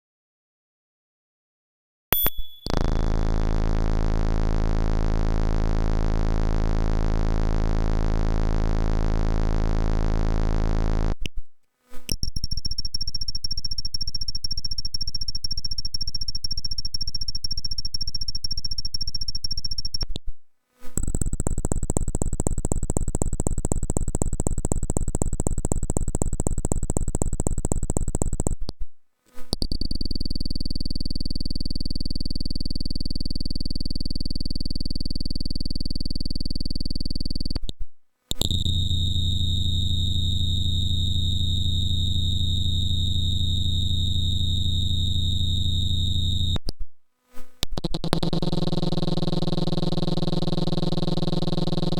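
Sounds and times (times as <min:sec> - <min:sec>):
rapid-pulsing electronic buzzes: 0:02.7 - 0:11.2, 0:21.0 - 0:28.6, 0:38.4 - 0:46.6, 0:47.8 - 0:51.9
low electronic drone: 0:38.4 - 0:46.6.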